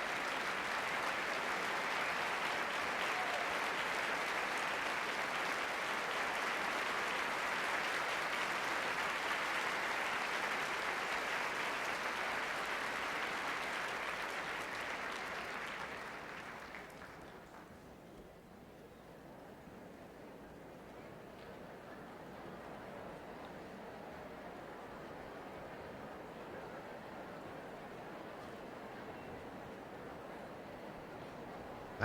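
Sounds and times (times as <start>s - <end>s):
audience applauding: 0.0s - 17.6s.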